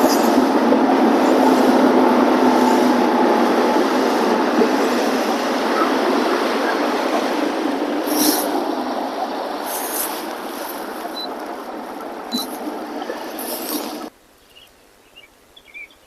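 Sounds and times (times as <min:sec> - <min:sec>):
spray hissing: 0:00.0 - 0:11.5
boat rushing across water: 0:00.0 - 0:14.2.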